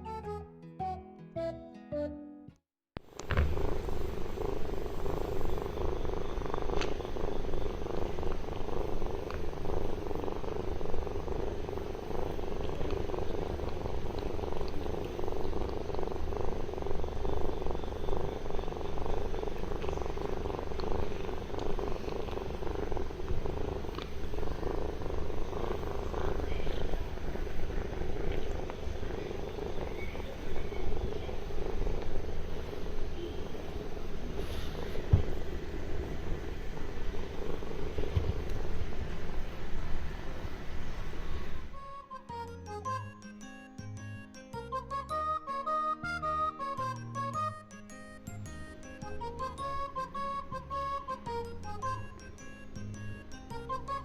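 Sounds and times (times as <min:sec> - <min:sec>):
kitten purring: 0:03.0 - 0:41.8, 0:48.6 - 0:54.0.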